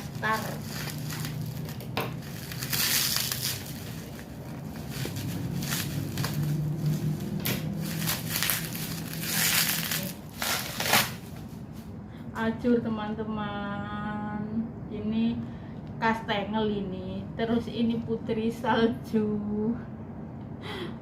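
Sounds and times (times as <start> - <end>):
packaging crinkling and rustling: 0.0 - 11.8.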